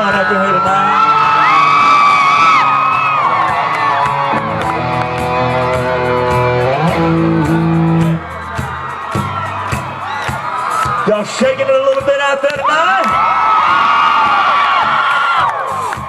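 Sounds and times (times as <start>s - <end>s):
electric guitars playing chords: 0.0s - 11.8s.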